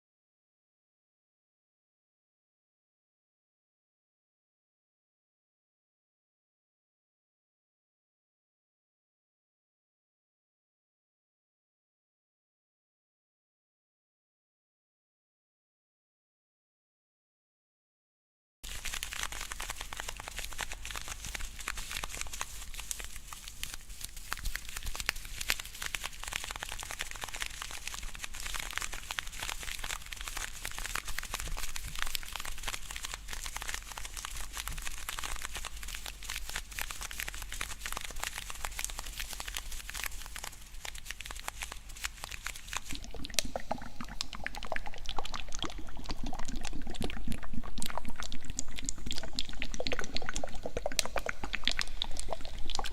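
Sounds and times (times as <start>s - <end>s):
wet mouth licking sounds: 18.6s - 52.9s.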